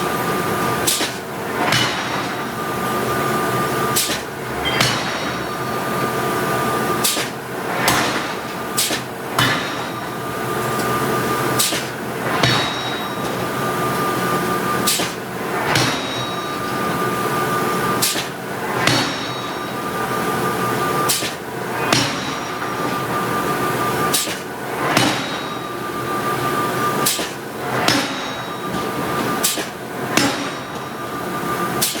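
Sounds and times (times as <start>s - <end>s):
forging hammer striking steel: 0.0s - 32.0s
steady machine hum: 0.0s - 32.0s
metallic ring: 4.5s - 7.0s, 12.4s - 14.8s, 15.7s - 17.9s, 21.8s - 24.0s, 25.1s - 26.5s, 28.2s - 29.2s.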